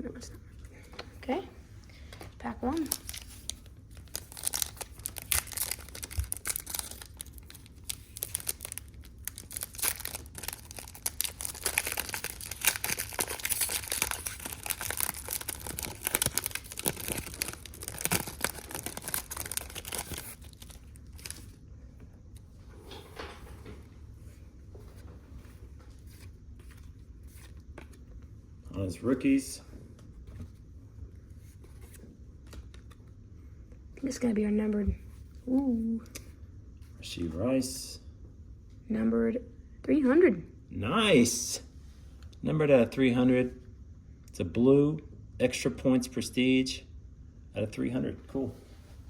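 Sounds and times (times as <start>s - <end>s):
wrapper tearing and crinkling: 2.8s - 21.6s.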